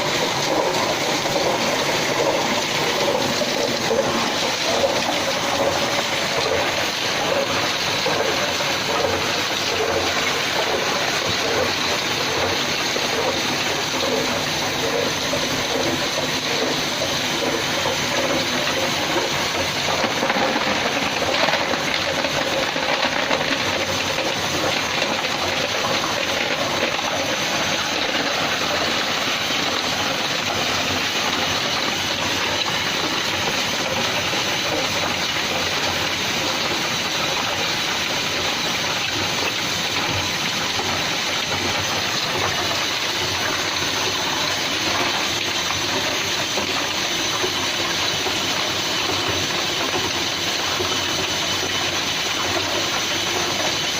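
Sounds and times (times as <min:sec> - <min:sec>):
circulating water rushing: 0:00.0 - 0:53.9
ice machine hiss: 0:00.0 - 0:53.9.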